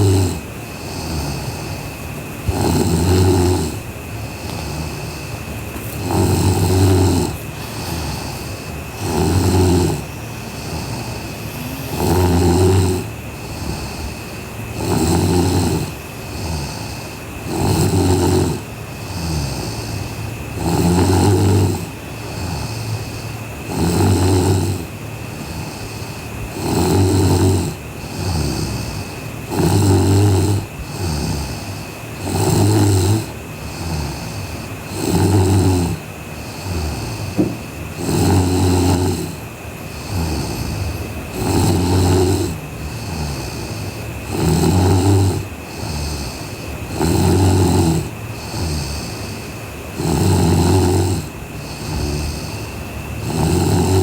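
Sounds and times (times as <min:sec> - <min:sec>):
soft breathing: 0:00.0 - 0:18.0, 0:18.6 - 0:54.0
faint high whine: 0:00.0 - 0:23.7
woman snoring: 0:00.0 - 0:54.0.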